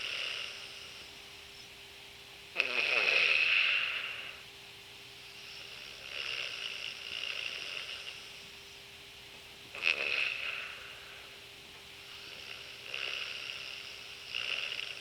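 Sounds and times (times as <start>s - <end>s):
person snoring: 0.0s - 1.1s, 2.6s - 4.4s, 5.3s - 8.3s, 9.8s - 11.4s, 12.1s - 15.0s.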